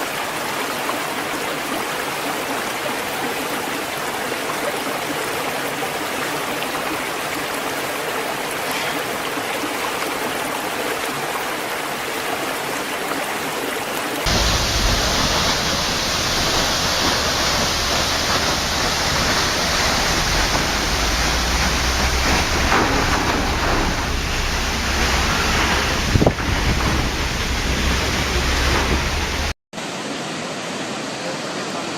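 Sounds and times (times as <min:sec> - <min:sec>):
rushing water: 0:00.0 - 0:31.9
deep rushing with low rumble: 0:14.3 - 0:29.6.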